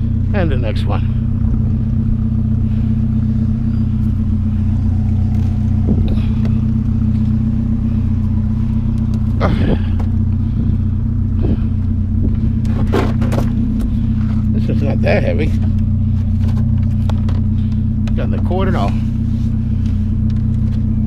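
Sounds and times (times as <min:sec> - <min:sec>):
pickup truck engine idling: 0:00.0 - 0:21.0.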